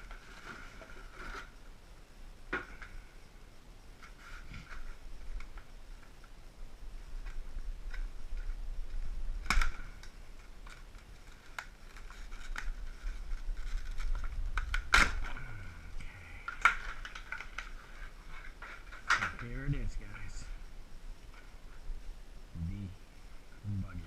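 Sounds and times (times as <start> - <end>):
low steady hum: 0.0 - 24.0
packaging clicks and rustles: 9.4 - 15.4, 16.4 - 19.5.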